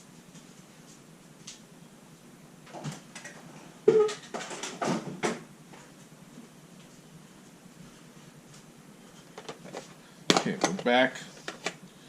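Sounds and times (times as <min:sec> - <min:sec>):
clicks and knocks of handled objects: 0:09.3 - 0:11.8.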